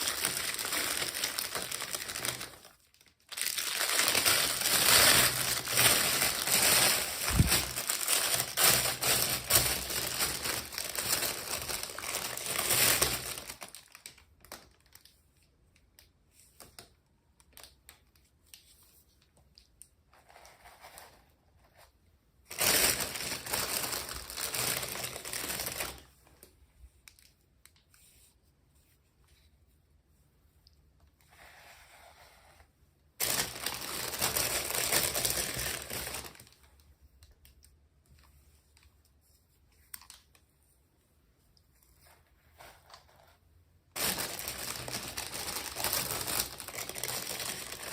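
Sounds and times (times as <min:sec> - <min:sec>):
packaging wrapper crinkling: 0:00.0 - 0:15.1, 0:22.5 - 0:26.1, 0:33.2 - 0:36.6, 0:43.9 - 0:47.9.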